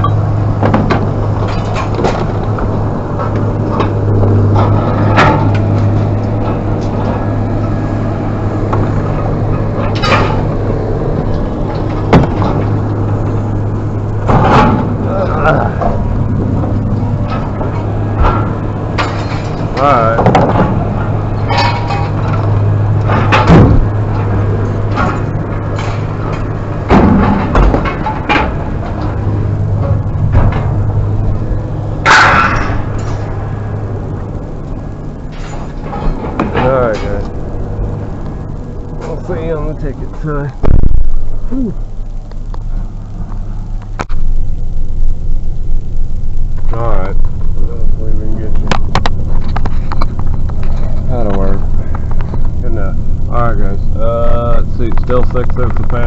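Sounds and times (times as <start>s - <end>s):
vehicle engine humming: 0.0s - 56.0s
loud bang: 40.6s - 41.3s.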